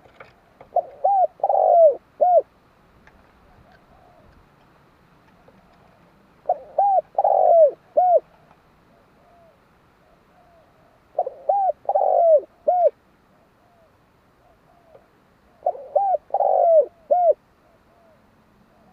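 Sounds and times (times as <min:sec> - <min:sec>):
dove cooing: 0:00.6 - 0:02.5, 0:03.4 - 0:04.5, 0:05.4 - 0:18.9.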